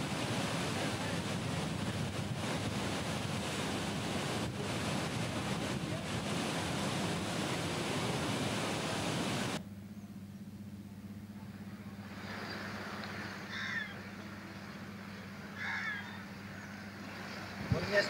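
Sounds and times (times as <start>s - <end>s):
steady rushing noise: 0.0s - 9.6s.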